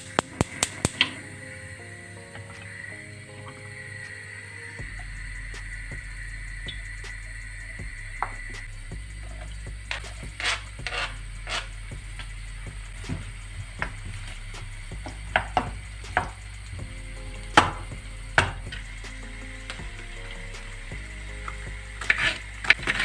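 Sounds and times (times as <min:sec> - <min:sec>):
steady low hum: 0:04.8 - 0:23.0.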